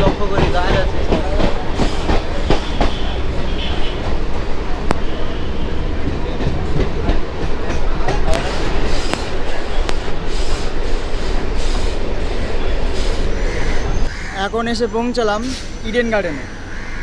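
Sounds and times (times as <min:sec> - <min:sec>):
sharp track clacks: 0:00.0 - 0:05.1
train wheels rumbling on track: 0:00.0 - 0:17.0.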